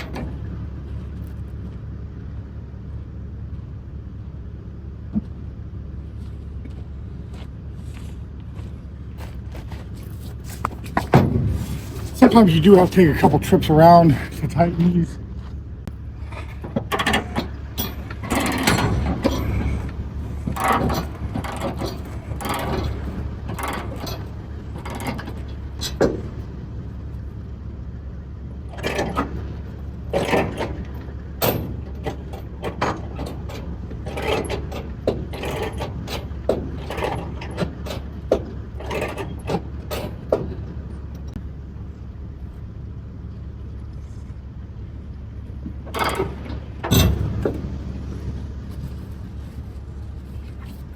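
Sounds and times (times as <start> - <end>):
steady low hum: 0.5 - 16.6.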